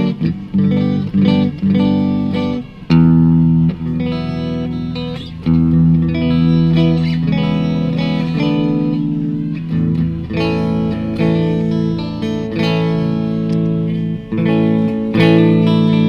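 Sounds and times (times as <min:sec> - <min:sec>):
clean electric guitar chords: 0:00.0 - 0:16.0.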